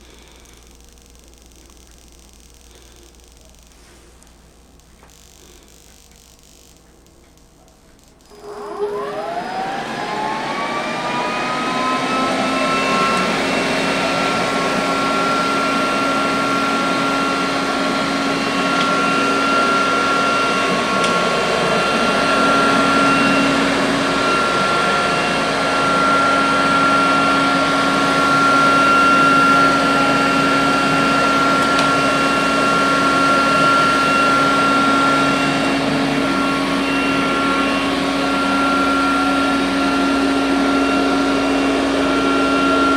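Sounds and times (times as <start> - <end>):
robot vacuum cleaner motor whine: 8.0 - 42.9.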